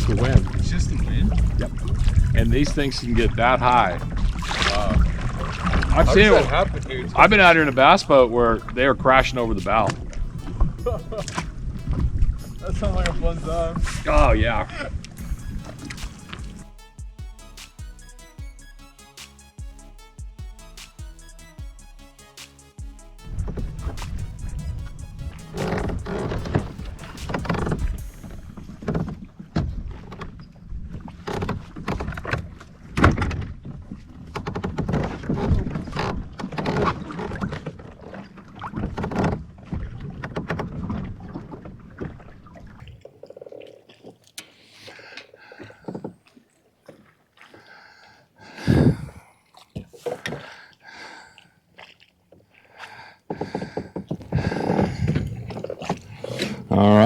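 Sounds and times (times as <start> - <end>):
wind rumbling on microphone: 0.0 - 16.2, 48.6 - 49.2, 54.1 - 57.0
water slapping against kayak hull: 0.0 - 16.6, 23.3 - 56.8.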